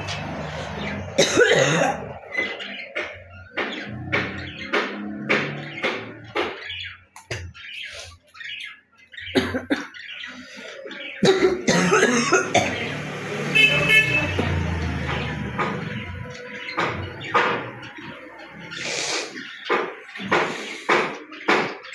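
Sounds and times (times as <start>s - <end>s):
woman coughing and hawking: 1.2s - 2.1s, 11.2s - 12.8s
vehicle horn honking: 12.6s - 15.0s.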